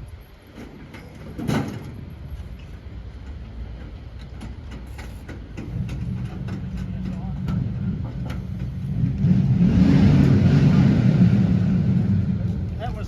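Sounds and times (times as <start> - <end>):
low steady rumble: 0.0 - 13.0
metal clanks and knocks: 0.5 - 8.9.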